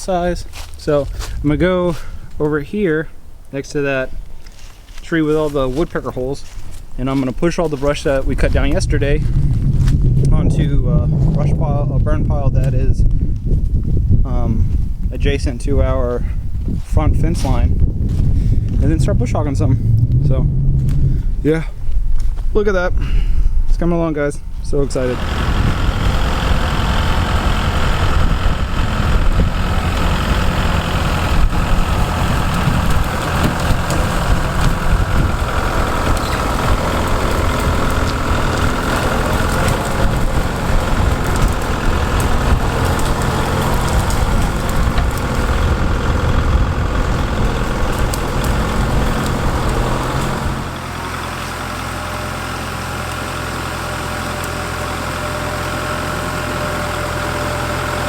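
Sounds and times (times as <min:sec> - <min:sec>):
tractor diesel engine running: 0:00.0 - 0:13.8, 0:16.2 - 0:22.2, 0:24.8 - 0:58.0
sharp cracks and clanks: 0:25.1 - 0:50.8.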